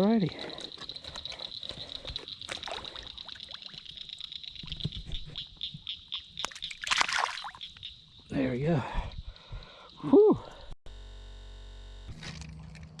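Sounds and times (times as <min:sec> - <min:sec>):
water splashing and trickling: 0:01.3 - 0:08.4.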